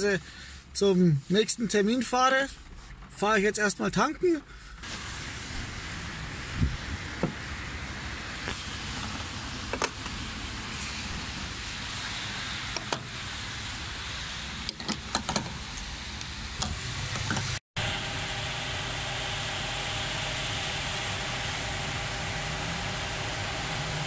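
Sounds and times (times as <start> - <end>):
car background noise: 0.0 - 17.6.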